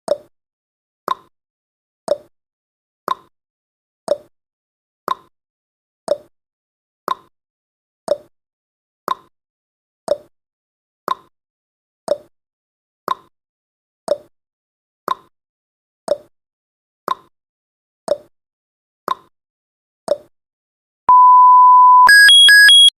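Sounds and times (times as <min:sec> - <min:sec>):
steady high beep: 0:21.1 - 0:22.9.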